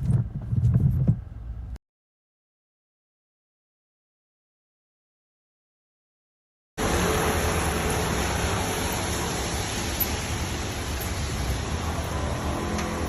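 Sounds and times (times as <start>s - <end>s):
water hissing on windshield: 6.8s - 13.0s.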